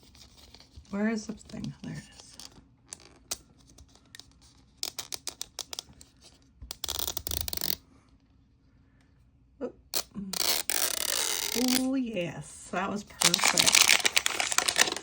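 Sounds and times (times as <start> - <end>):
plastic wrapping crinkling and tearing: 10.5 - 11.9, 13.0 - 15.0.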